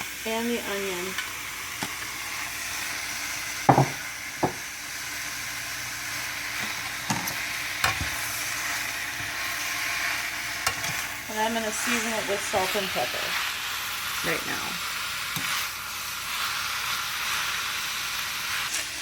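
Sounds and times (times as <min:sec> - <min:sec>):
meat and onions sizzling in pan: 0:00.0 - 0:19.0
utensil knocking against pan: 0:03.7 - 0:04.6.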